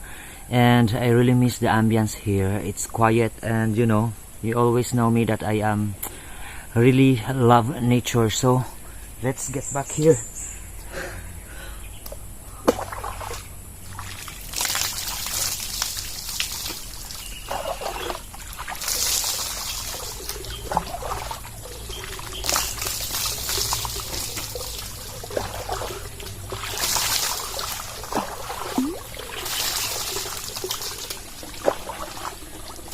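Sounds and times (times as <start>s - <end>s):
water pouring and splashing: 12.6s - 32.9s
water trickling: 12.7s - 32.9s.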